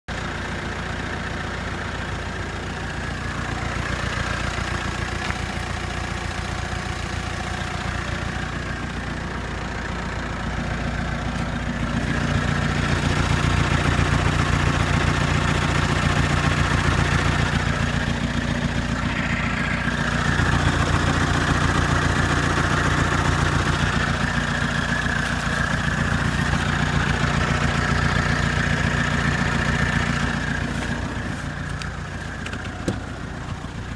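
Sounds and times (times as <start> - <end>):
diesel engine idling: 0.1 - 33.9
odd engine noise: 0.1 - 33.9.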